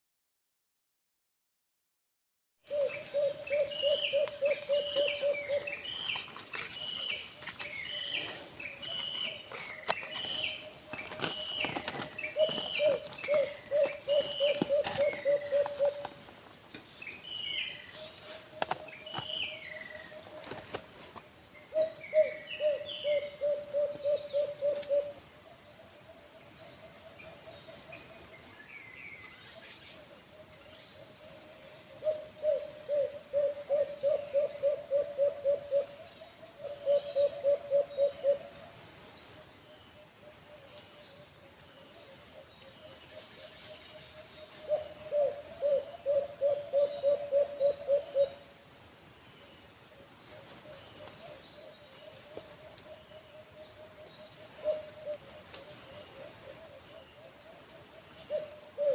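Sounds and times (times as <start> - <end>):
birds chirping: 2.6 - 58.9
doves cooing: 2.7 - 16.4, 21.7 - 25.2, 31.7 - 38.5, 44.5 - 48.4, 51.1 - 58.9
high insect drone: 2.7 - 58.9.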